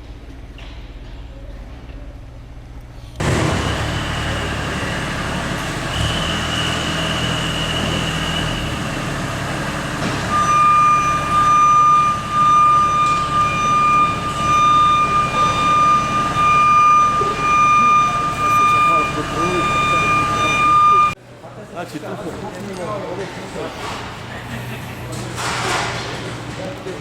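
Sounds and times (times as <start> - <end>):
heavy vehicle engine running: 3.2 - 21.2
reversing alarm beeps: 6.0 - 21.2.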